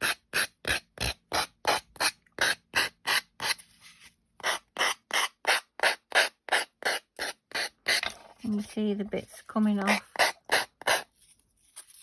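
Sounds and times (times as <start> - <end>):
nail file rasping: 0.0 - 3.6, 4.4 - 8.0, 9.8 - 11.1.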